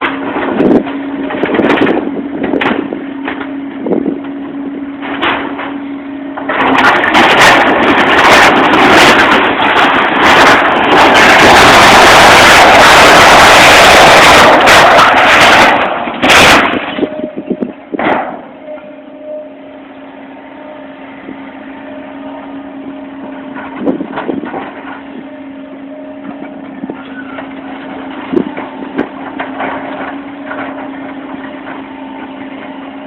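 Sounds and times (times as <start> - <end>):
building crashing and rumbling: 0.0 - 3.6, 5.0 - 18.6, 22.2 - 25.4, 26.2 - 32.9
steady machine hum: 0.0 - 33.0
knocks and cracks: 6.4 - 17.1.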